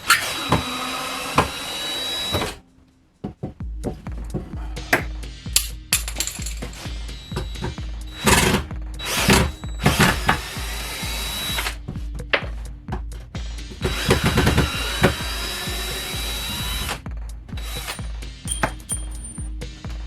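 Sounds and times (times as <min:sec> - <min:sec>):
power drill whining: 0:00.0 - 0:02.6, 0:06.7 - 0:11.8, 0:13.8 - 0:17.0, 0:17.6 - 0:19.0
background music with bass beat: 0:03.3 - 0:20.0.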